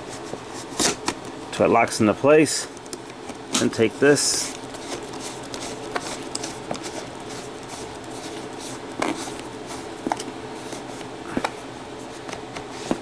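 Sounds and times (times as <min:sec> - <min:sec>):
plastic parts clicking: 0:04.5 - 0:10.3.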